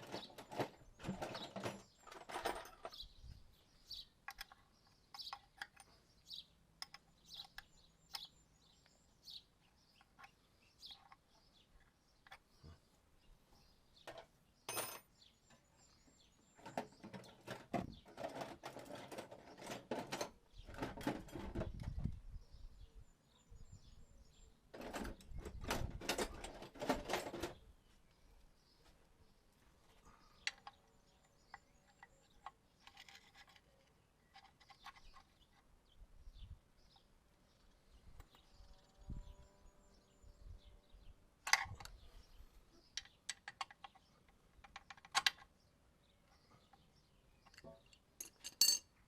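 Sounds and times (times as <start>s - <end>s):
metal tools clattering and scraping: 0.0s - 3.0s, 14.1s - 15.1s, 16.6s - 21.7s, 24.8s - 27.6s, 47.5s - 48.9s
faint bird chirps: 0.0s - 17.1s.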